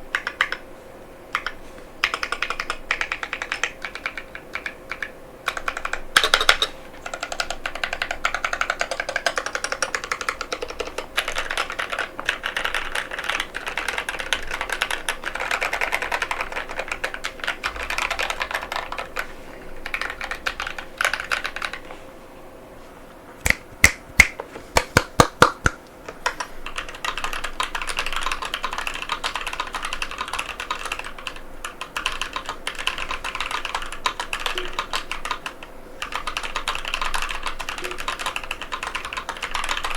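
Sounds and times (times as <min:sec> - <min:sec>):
fast typing on mechanical keyboard: 0:00.0 - 0:00.6, 0:01.3 - 0:21.9, 0:26.2 - 0:39.9.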